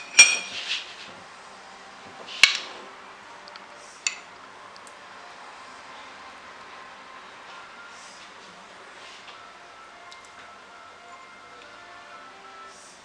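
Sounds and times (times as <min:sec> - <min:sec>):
metal spoon clinking against bowl: 0:00.0 - 0:00.6.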